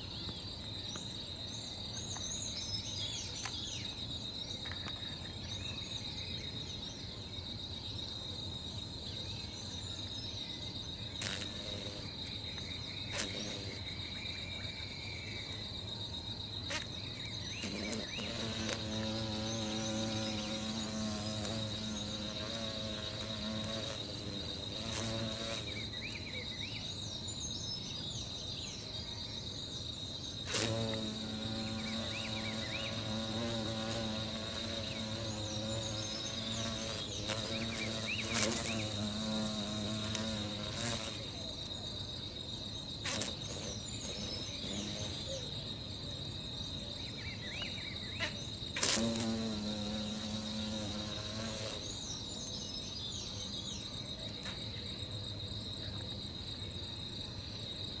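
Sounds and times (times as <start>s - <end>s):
insect trill with chirps: 0.0s - 58.0s
beetle wings buzzing: 10.3s - 26.8s, 30.3s - 53.2s.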